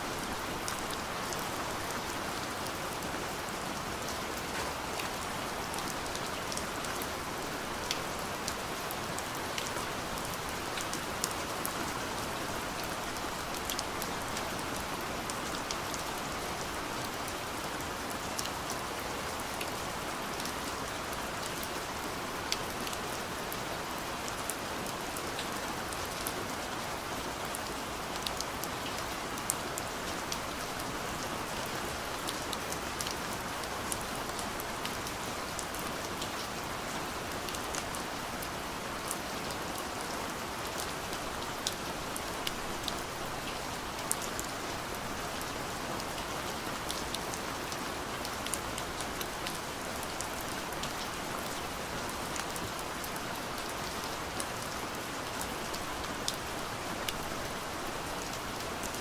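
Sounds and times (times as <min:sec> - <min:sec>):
soft rain on window: 0:00.0 - 0:59.0.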